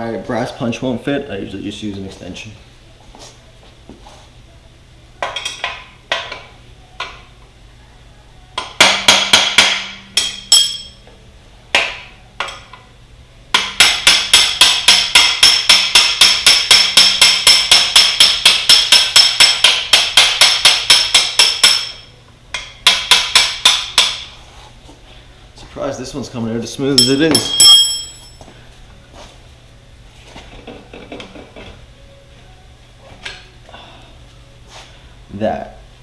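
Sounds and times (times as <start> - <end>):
hammer striking metal: 8.6 - 11.0, 11.7 - 12.8, 13.5 - 24.3, 27.0 - 28.4.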